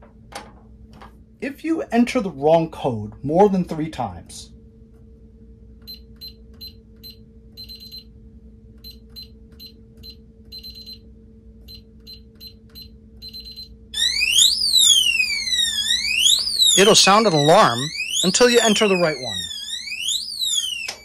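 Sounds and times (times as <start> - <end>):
long keypad beep: 13.3 - 21.0
alarm siren sweeping up and down: 14.0 - 21.0.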